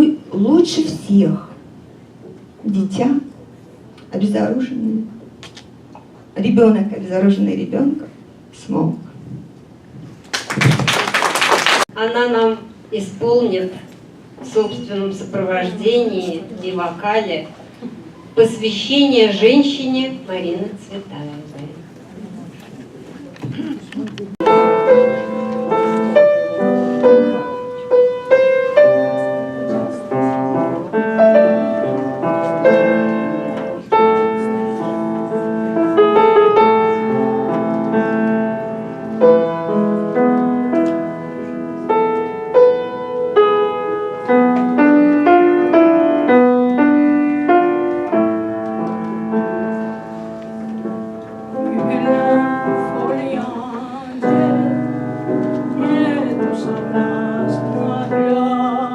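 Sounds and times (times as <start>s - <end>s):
solo piano playing: 24.4s - 58.9s.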